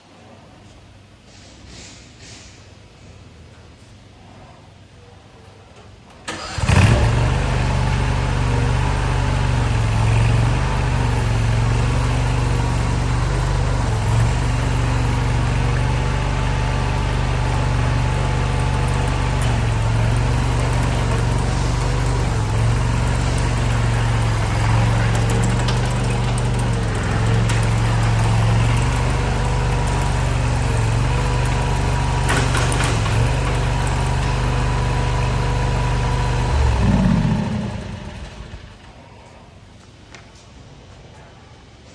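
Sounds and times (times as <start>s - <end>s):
loader engine running: 6.3s - 39.0s.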